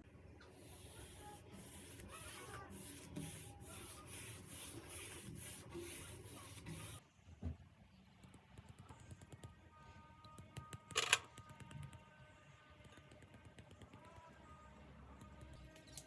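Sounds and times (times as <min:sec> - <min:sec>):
rubbing or scraping strokes: 0:00.6 - 0:07.0.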